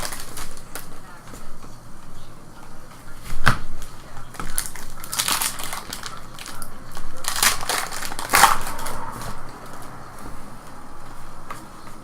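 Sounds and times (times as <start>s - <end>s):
foil wrappers tearing and crinkling: 0.0s - 0.9s, 3.4s - 9.0s.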